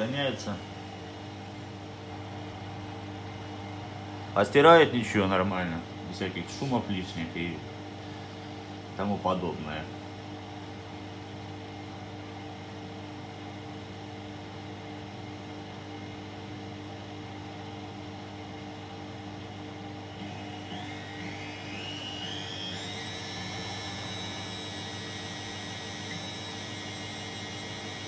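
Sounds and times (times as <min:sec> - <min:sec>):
rising whine of spinning drum: 0:00.0 - 0:04.2, 0:20.0 - 0:28.0
washing machine motor hum: 0:00.0 - 0:08.3, 0:16.8 - 0:28.0.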